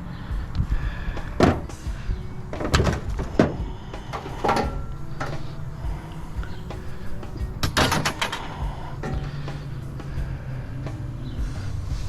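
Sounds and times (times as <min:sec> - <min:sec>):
metal parts knocking and clanking: 0:02.5 - 0:09.3.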